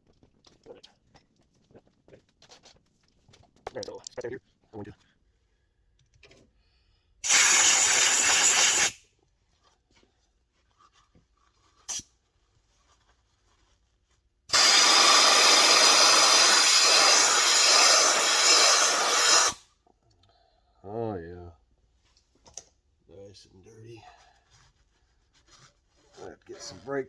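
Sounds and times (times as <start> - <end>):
compressed air hissing from nozzle: 7.2 - 9.0, 14.5 - 19.6.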